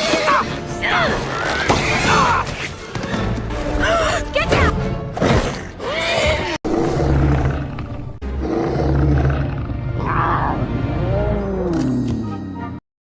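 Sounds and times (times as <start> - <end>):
dramatic film music: 0.0 - 12.8
animal roaring and growling: 5.2 - 12.7.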